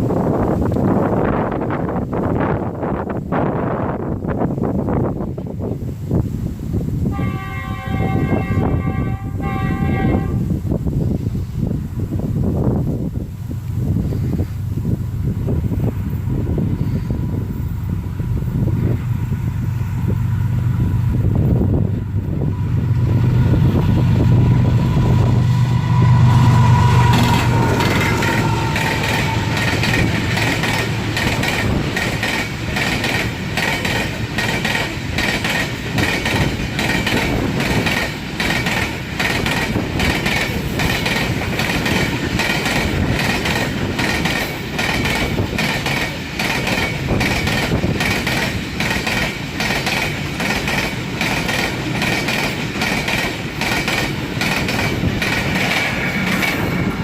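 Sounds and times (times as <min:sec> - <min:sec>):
train wheels clicking over rail joints: 0:13.6 - 0:57.0
low drone: 0:13.7 - 0:32.8
steady high tone: 0:17.0 - 0:31.8.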